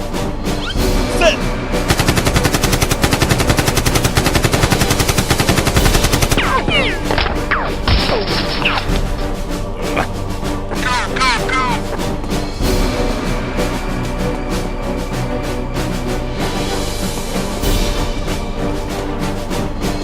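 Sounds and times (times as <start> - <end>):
background music: 0.0 - 20.0
rapid automatic gunfire: 1.9 - 7.1.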